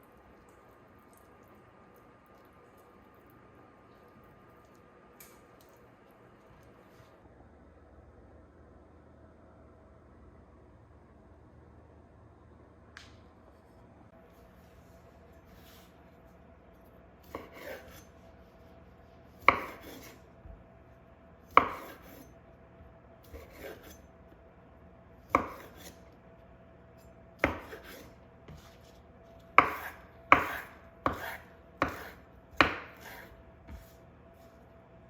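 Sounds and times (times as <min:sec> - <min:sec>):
knife chopping on cutting board: 0:17.2 - 0:18.1, 0:19.4 - 0:20.2, 0:21.5 - 0:22.3, 0:23.3 - 0:24.0, 0:25.3 - 0:26.0, 0:27.4 - 0:28.9, 0:29.6 - 0:34.0.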